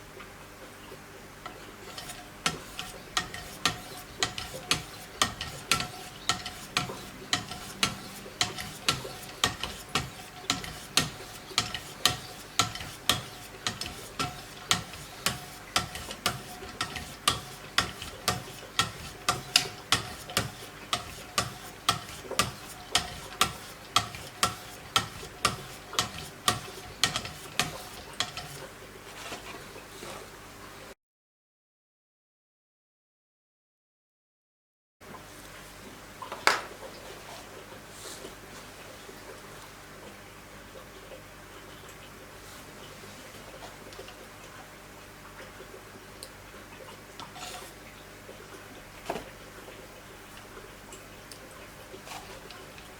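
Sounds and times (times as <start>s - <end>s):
stones scraping knife blade: 1.9s - 28.6s.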